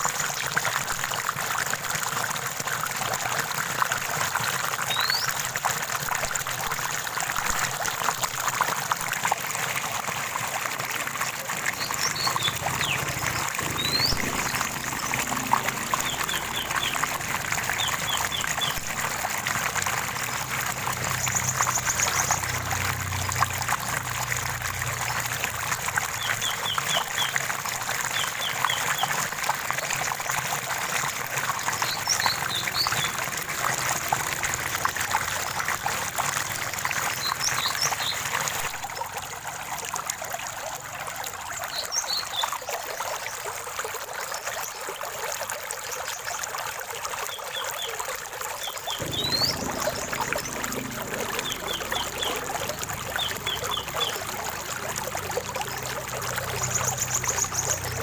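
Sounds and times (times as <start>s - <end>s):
running water trickling: 0.0s - 58.0s
bird trill: 11.8s - 15.3s, 48.9s - 54.6s
birds calling: 11.8s - 19.2s, 48.9s - 58.0s.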